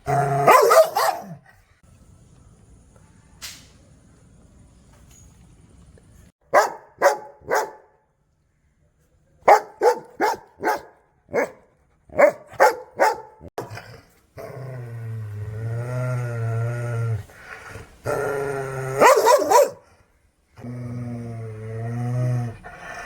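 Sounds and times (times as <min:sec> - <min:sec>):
dog barking: 0:00.4 - 0:01.4, 0:06.5 - 0:08.0, 0:09.4 - 0:13.5, 0:19.0 - 0:19.9
dog growling: 0:13.6 - 0:19.6, 0:20.6 - 0:23.0.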